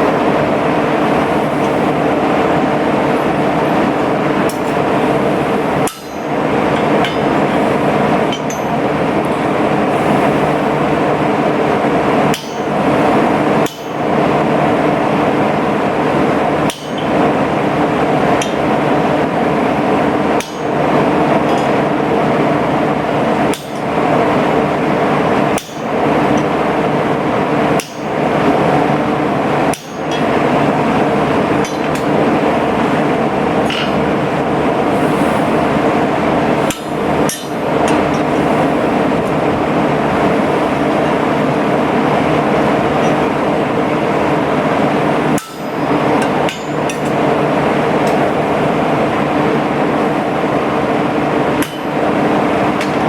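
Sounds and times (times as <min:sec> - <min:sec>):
hammer striking metal on anvil: 0:05.8 - 0:09.0, 0:12.3 - 0:13.0, 0:13.6 - 0:14.2, 0:16.6 - 0:17.6, 0:18.4 - 0:18.8, 0:20.4 - 0:22.0, 0:23.4 - 0:24.0, 0:25.5 - 0:26.6, 0:27.8 - 0:28.2, 0:29.7 - 0:30.7, 0:31.6 - 0:32.3, 0:36.7 - 0:38.5, 0:45.3 - 0:47.3, 0:51.6 - 0:52.1.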